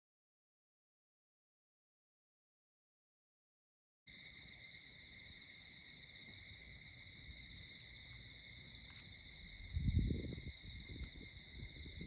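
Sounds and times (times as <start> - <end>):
crickets trilling: 4.1 - 12.0.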